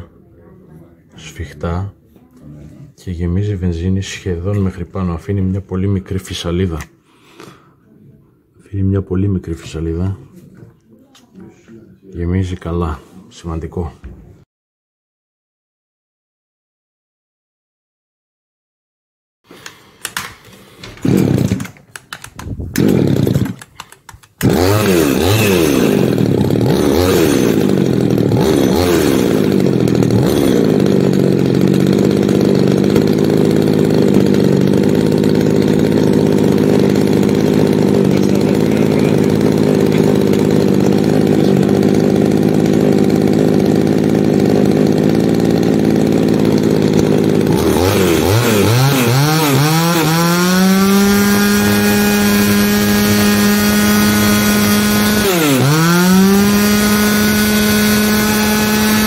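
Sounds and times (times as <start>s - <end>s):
chainsaw pull-start cord: 19.6s - 59.0s
chainsaw engine running: 20.9s - 59.0s.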